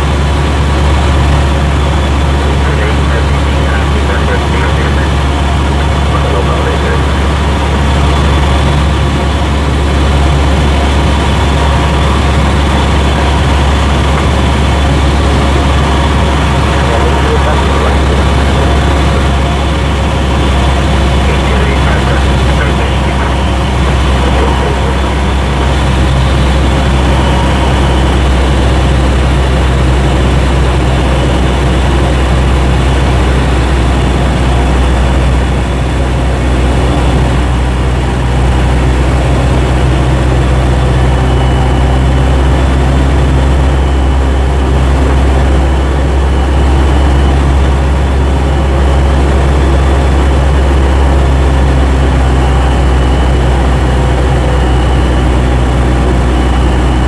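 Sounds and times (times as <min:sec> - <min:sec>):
airplane engine and propeller drone: 0:00.0 - 0:57.0.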